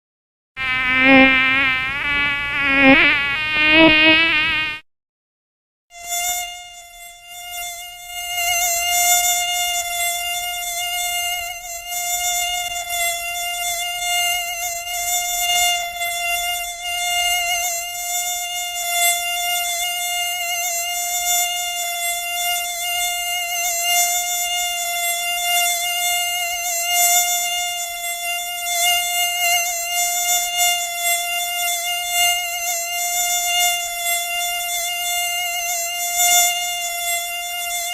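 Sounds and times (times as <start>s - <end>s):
mosquito wingbeat whine: 0.6s - 4.8s.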